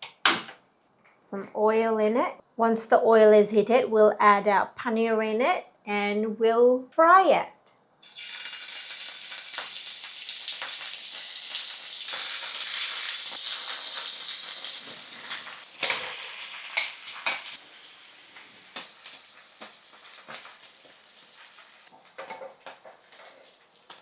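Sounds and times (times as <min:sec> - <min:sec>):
food sizzling in hot oil: 0:08.0 - 0:24.0.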